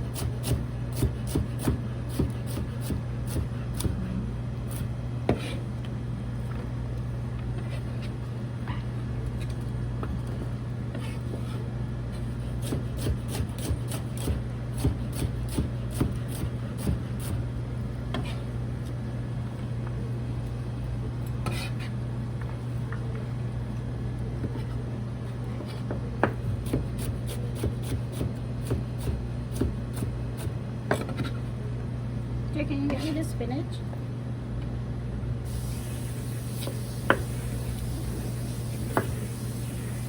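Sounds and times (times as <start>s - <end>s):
knife chopping on cutting board: 0.0s - 4.0s, 12.6s - 17.4s, 25.6s - 31.4s
steady low hum: 0.0s - 40.0s.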